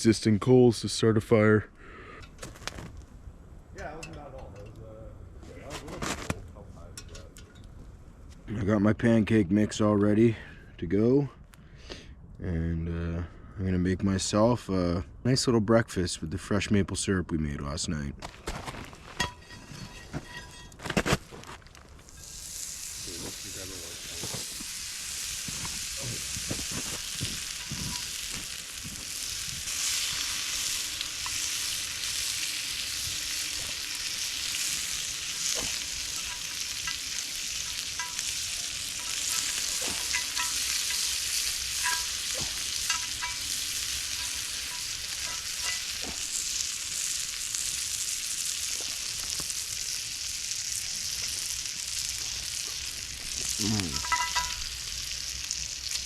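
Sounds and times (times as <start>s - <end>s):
oil popping and crackling: 2.4s - 3.1s, 18.3s - 56.0s
food sizzling in a pan: 22.0s - 56.0s.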